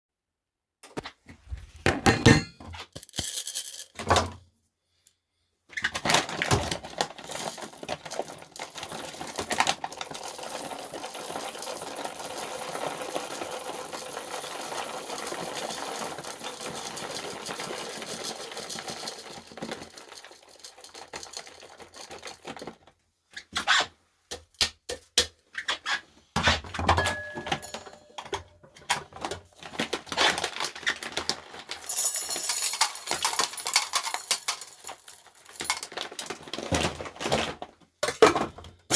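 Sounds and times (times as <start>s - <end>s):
coffee grinder grinding beans: 2.9s - 4.0s, 6.4s - 22.8s, 29.2s - 37.4s.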